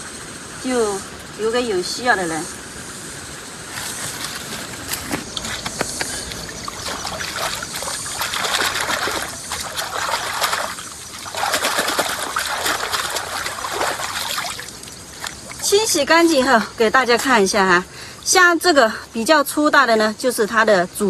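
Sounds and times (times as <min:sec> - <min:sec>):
water trickling and splashing: 0:00.1 - 0:20.8
roots rinsed by hand in water: 0:03.7 - 0:20.4.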